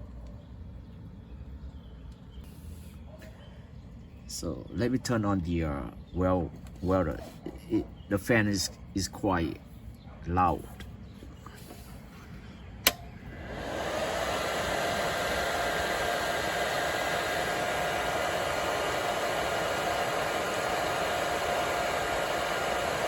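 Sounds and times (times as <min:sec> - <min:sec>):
cooling fan whooshing: 0:04.1 - 0:23.0
welder switch click: 0:12.8 - 0:13.2.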